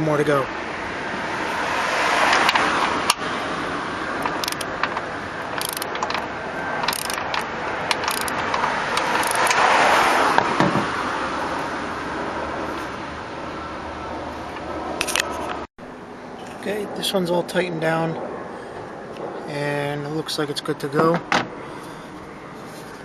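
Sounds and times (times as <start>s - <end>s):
torque wrench ratcheting: 4.2s - 9.6s.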